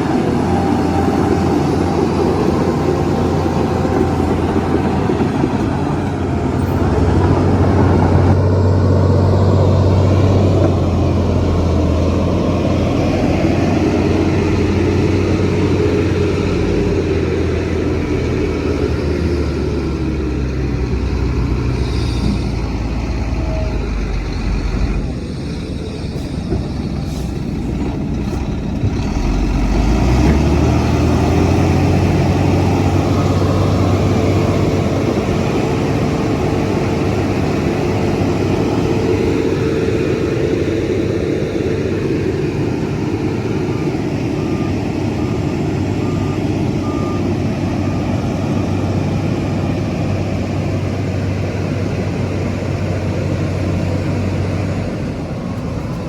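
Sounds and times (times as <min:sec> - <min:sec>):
heavy diesel machinery running: 0:00.0 - 0:56.0
reversing alarm beeping: 0:42.5 - 0:49.9.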